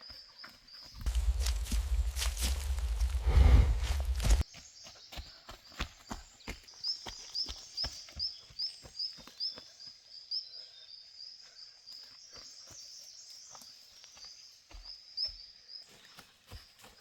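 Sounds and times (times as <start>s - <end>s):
footsteps walking: 0.4s - 4.5s.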